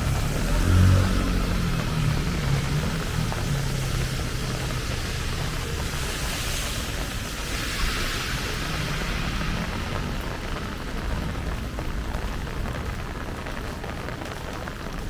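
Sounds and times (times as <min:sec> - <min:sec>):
heavy rain on street: 0:00.0 - 0:15.0
low rumble: 0:00.0 - 0:15.0.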